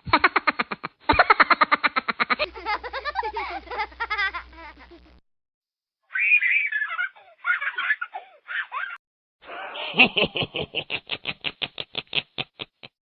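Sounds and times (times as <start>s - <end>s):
rhythmic ha laugh: 0.0s - 5.2s, 9.7s - 13.0s
high-pitched giggling: 0.1s - 5.2s, 6.1s - 9.0s.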